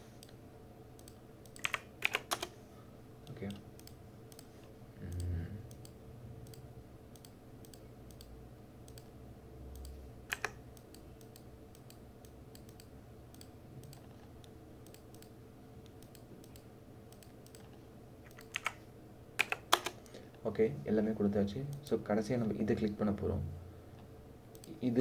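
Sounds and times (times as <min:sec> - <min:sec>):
faint low hum: 0:00.0 - 0:25.0
mouse and keyboard clicks: 0:09.8 - 0:15.3.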